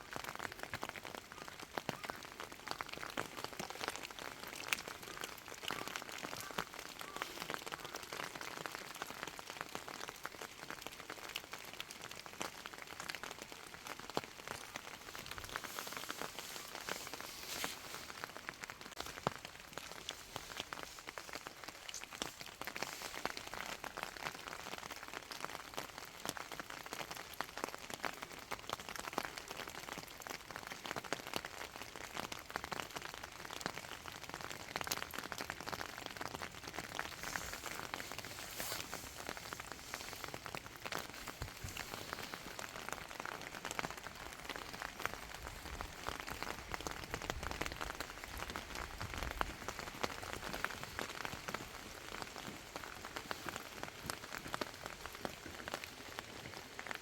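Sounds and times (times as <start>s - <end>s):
dense patter of ticks and crackles: 0.0s - 57.0s.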